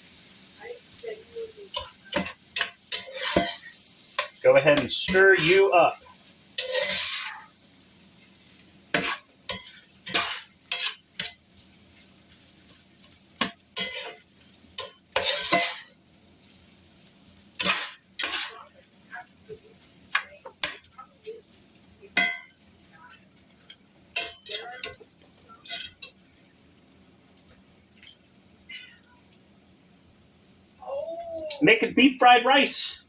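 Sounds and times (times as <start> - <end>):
rice sizzling: 0.0 - 33.0
utensil scraping and clanking pan: 1.0 - 18.8, 19.4 - 26.4.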